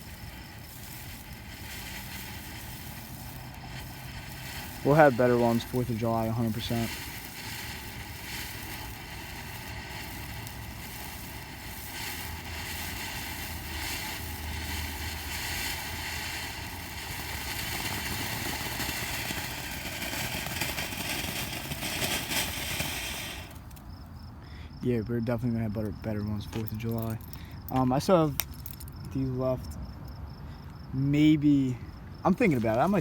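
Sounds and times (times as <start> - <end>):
firework fountain hissing: 0.0 - 23.8, 32.2 - 33.0.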